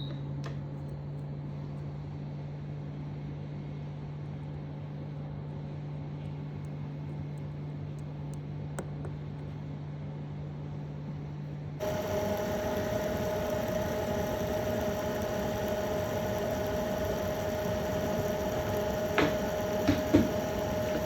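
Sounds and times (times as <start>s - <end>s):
electrical hum with fan hiss: 0.0s - 21.0s
faint clicks: 11.8s - 21.0s.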